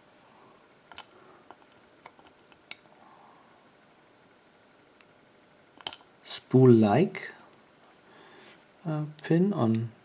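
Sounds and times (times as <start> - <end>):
metal lock pins clicking: 5.8 - 6.0.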